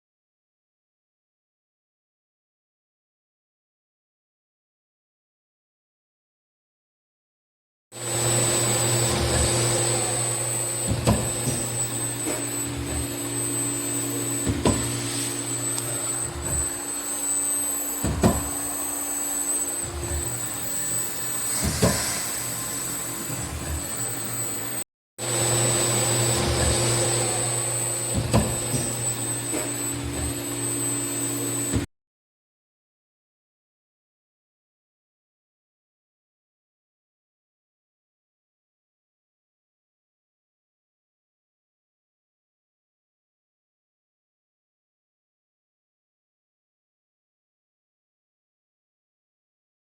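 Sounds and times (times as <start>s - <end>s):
fan whir: 8.0s - 31.9s
high-pitched whine: 8.0s - 31.9s.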